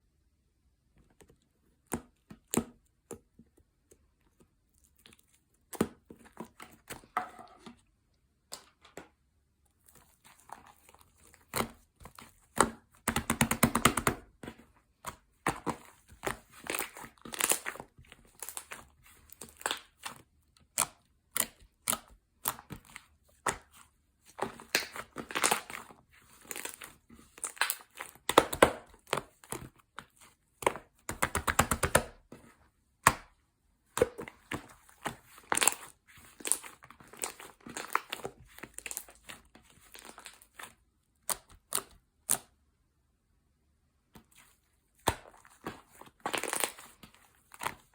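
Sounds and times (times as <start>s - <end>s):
slime squished by hand: 33.0s - 42.6s, 44.1s - 47.9s.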